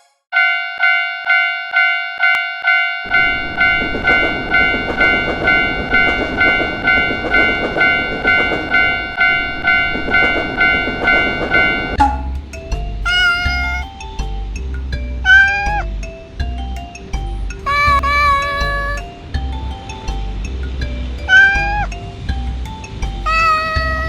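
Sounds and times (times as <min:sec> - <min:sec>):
railroad crossing alarm ringing: 0:00.4 - 0:12.4
passing train rumble: 0:03.0 - 0:13.3, 0:17.6 - 0:24.0.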